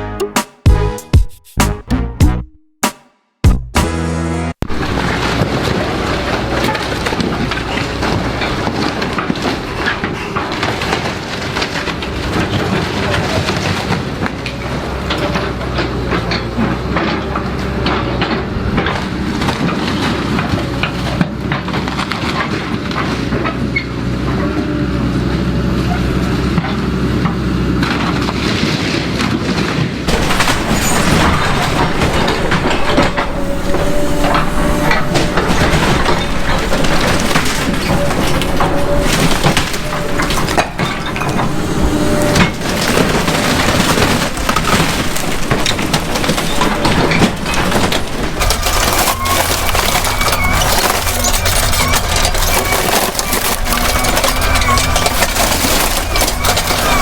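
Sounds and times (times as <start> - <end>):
diesel engine running: 30.1 - 57.0
metallic clanking and knocking: 30.1 - 57.0.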